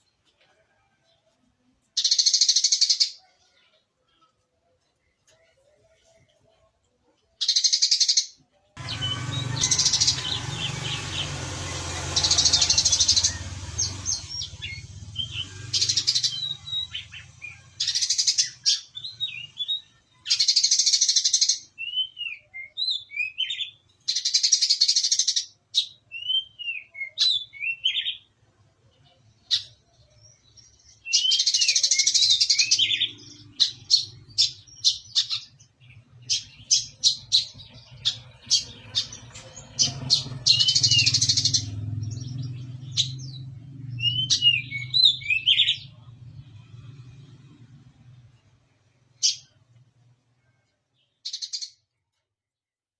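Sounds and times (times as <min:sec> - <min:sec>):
bird chirps: 0:01.9 - 0:52.0
bird singing buzzy trills: 0:07.4 - 0:49.6.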